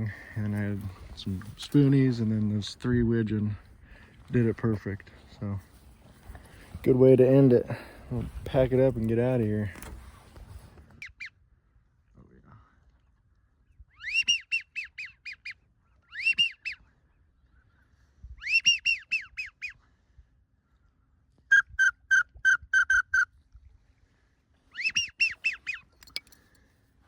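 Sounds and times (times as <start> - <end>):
geese yelping calls: 14.0 - 16.8, 18.4 - 19.7, 24.8 - 25.9.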